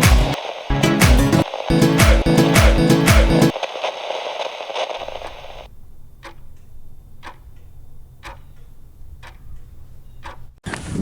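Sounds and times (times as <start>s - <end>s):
steady ticking: 0.0s - 3.5s, 5.2s - 10.6s.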